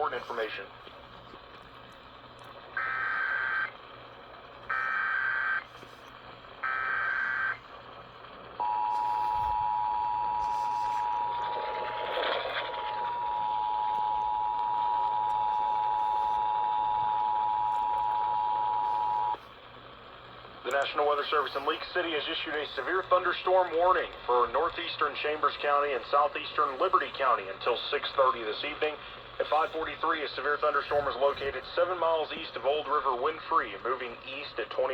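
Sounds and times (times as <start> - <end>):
warbling data tone bursts: 2.8 - 3.8, 4.7 - 5.7, 6.6 - 7.6, 8.6 - 19.4
noise burst: 8.6 - 19.5.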